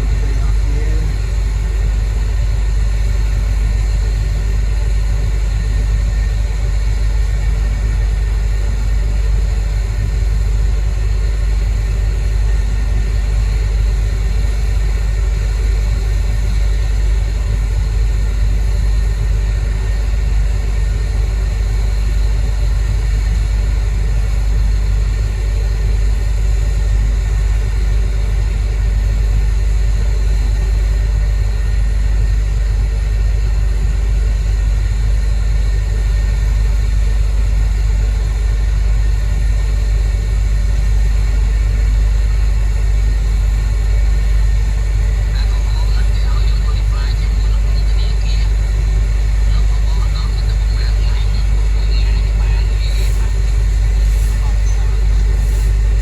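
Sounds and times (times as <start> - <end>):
heavy diesel machinery droning: 47.7 - 56.0.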